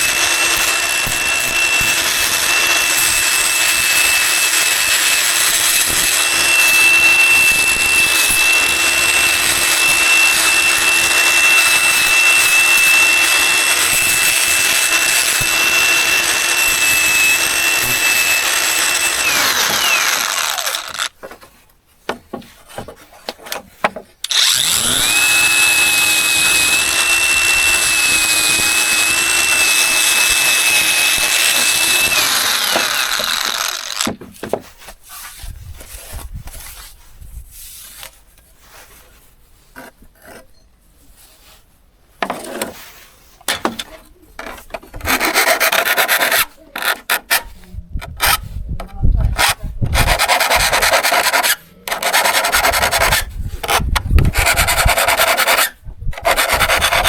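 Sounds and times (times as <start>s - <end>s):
small power tool whining: 0.0s - 21.2s, 24.2s - 34.2s, 49.3s - 57.0s.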